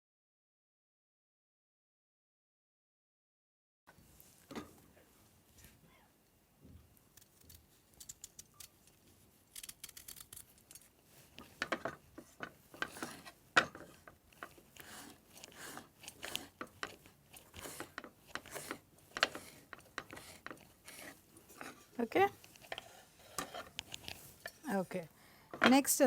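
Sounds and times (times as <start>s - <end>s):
knife slicing vegetables: 11.4s - 24.8s.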